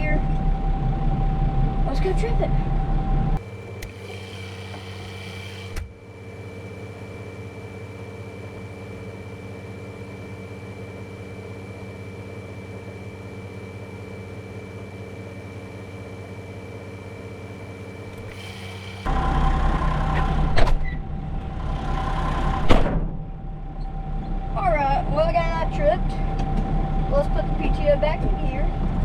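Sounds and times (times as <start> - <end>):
tractor engine idling: 0.0 - 29.0.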